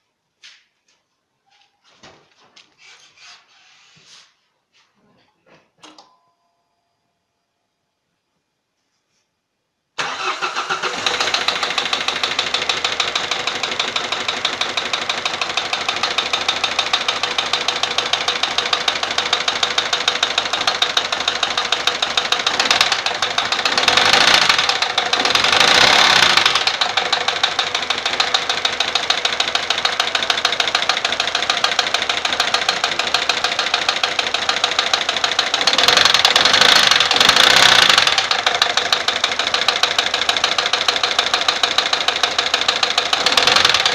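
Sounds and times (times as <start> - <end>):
diesel engine knocking tick: 12.6 - 43.9.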